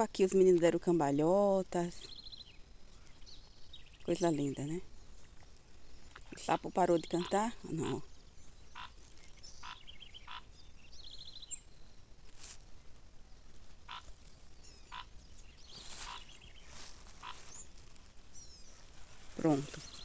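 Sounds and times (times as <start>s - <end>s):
frogs calling: 6.1s - 11.6s, 13.8s - 17.8s
frog rattling trills: 6.2s - 8.1s, 8.7s - 10.6s, 13.9s - 14.1s, 14.8s - 15.1s, 17.2s - 17.7s.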